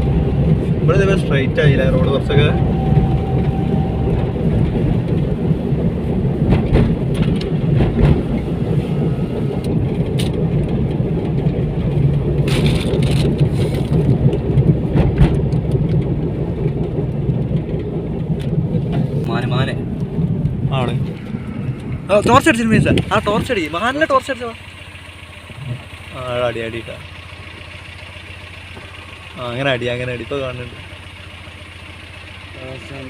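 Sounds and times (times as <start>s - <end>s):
car engine and tyres rumbling: 0.0s - 33.0s
knocks and rattles: 3.4s - 8.8s, 9.7s - 23.1s.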